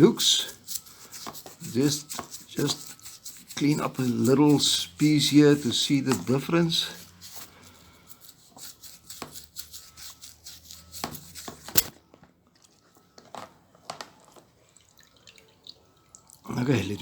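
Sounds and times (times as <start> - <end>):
scrubbing and scraping: 0.1 - 5.4.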